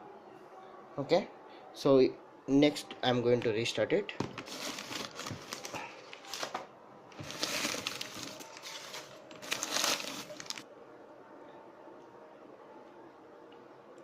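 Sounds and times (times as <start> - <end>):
newspaper crumpling and rustling: 4.4 - 10.6.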